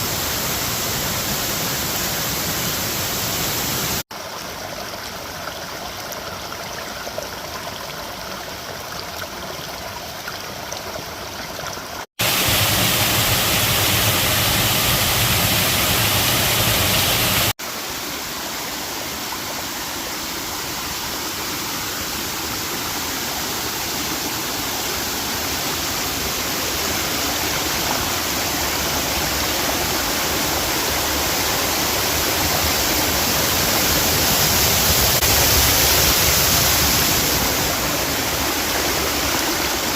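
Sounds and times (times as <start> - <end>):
waterfall rushing: 12.2 - 39.9.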